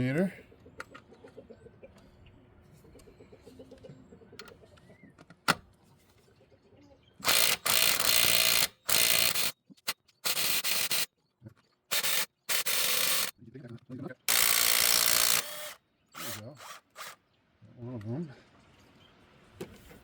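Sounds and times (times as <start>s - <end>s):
ratchet clicking: 7.2s - 9.5s, 10.2s - 11.1s, 11.9s - 13.3s, 14.3s - 17.2s
harsh mechanical noise: 10.2s - 11.1s, 11.9s - 13.3s, 14.3s - 17.2s.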